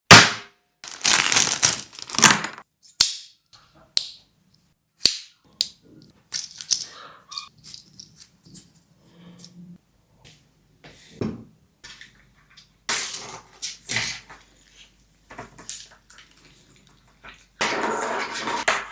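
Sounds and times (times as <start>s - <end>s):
crinkly rustling: 0.8s - 2.6s.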